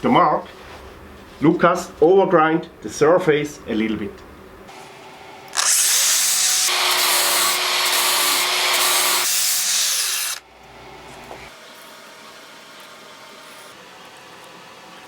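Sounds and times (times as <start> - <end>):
power grinder grinding steel: 5.6 - 10.4.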